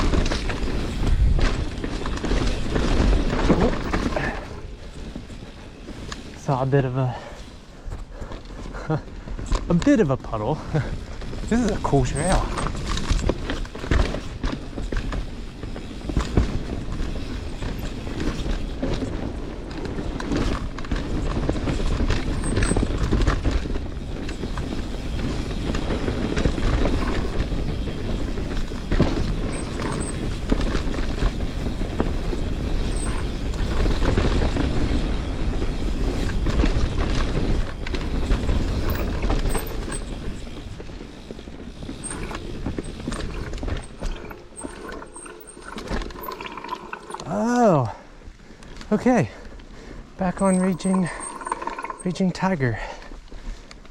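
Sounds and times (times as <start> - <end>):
bike clattering over bumps: 0.0 - 47.1
tyres rumbling on dirt: 0.0 - 53.0.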